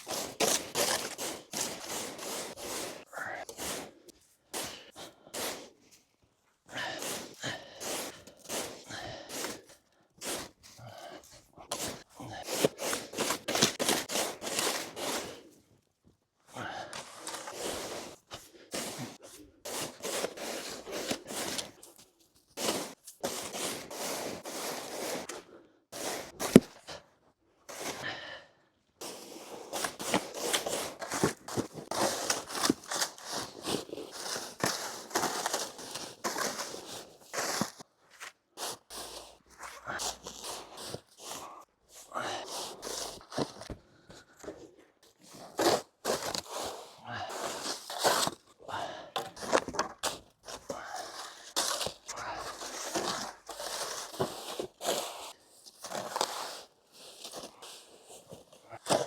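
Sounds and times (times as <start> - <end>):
shovel crunching and scraping snow: 0.0 - 6.1, 6.7 - 15.6, 16.6 - 27.0, 27.7 - 28.4, 29.0 - 43.7, 45.2 - 59.0.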